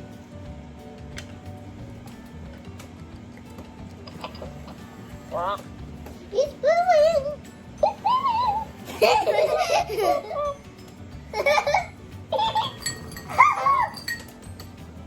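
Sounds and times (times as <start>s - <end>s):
high-pitched giggling: 6.4s - 10.6s, 11.3s - 14.2s.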